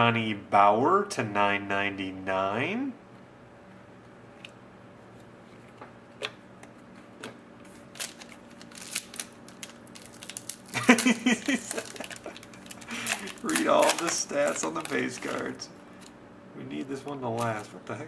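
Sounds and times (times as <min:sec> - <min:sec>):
trading cards clicking and crinkling: 0:05.7 - 0:16.2, 0:17.0 - 0:18.0.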